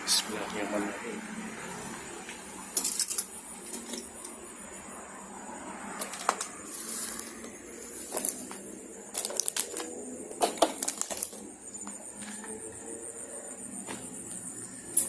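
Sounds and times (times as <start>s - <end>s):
footsteps crunching on debris: 6.3s - 9.9s.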